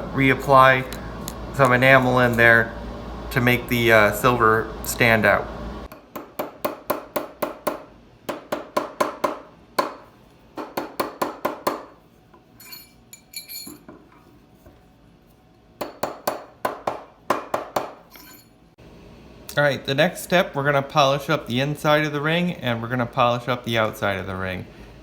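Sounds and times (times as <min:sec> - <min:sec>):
faint ringing clinks: 0:12.6 - 0:13.9, 0:18.1 - 0:18.6.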